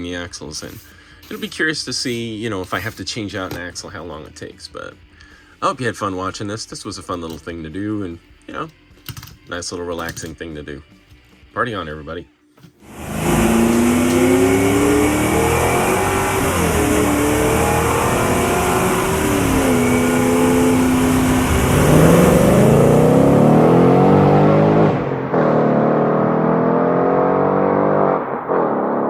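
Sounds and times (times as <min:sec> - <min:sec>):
car engine revving and accelerating: 0:12.8 - 0:29.0.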